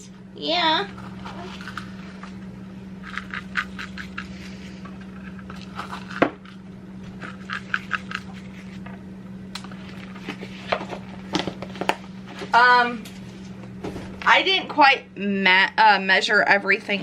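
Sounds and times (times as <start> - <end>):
mixture scraping in a bowl: 7.2 - 8.9.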